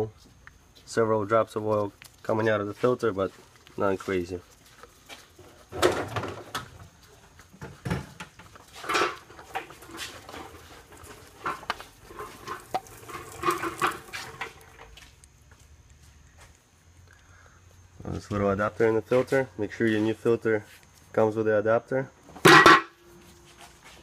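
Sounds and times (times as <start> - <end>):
oil filter parts clattering: 5.4 - 15.0, 22.3 - 23.0.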